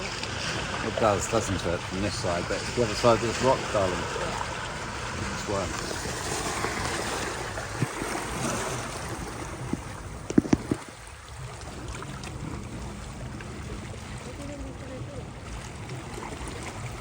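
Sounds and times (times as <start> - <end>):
sea water lapping on shore: 0.0 - 17.0.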